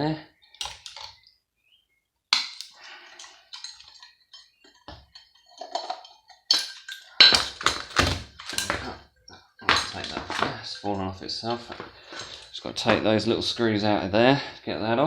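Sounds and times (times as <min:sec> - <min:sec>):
metal parts clinking and clattering: 0:00.6 - 0:01.3, 0:02.4 - 0:09.0, 0:09.6 - 0:13.6
knocks and rattles: 0:02.4 - 0:13.6.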